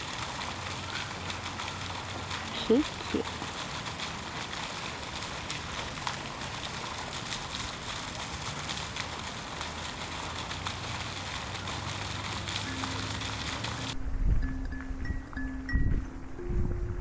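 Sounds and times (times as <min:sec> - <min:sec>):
steady high hiss: 0:00.0 - 0:17.0
low rumble: 0:13.9 - 0:17.0.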